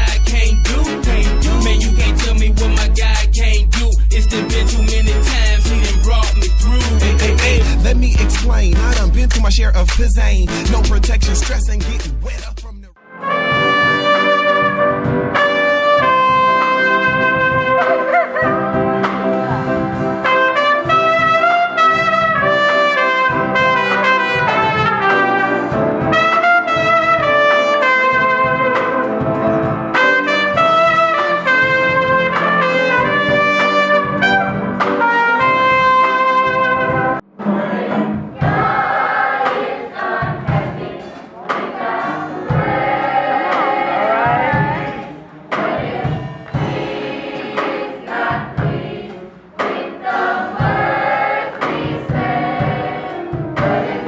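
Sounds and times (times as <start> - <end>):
steady beat: 0.0 - 37.2, 37.8 - 54.0
trumpet-led brass melody: 0.0 - 38.0.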